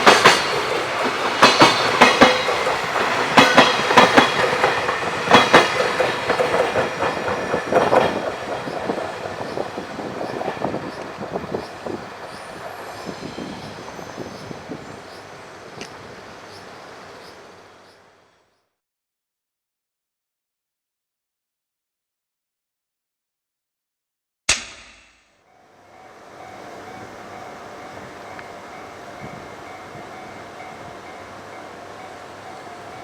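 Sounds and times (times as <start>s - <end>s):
train wheels clacking on rails: 0.0s - 14.5s.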